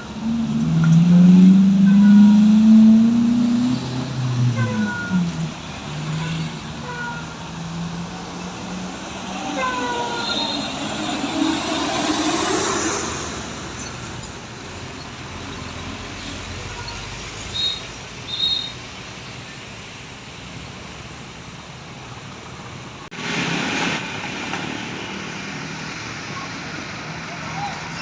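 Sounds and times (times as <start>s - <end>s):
road traffic passing: 0.0s - 28.0s
large vehicle passing loudly: 5.2s - 17.4s.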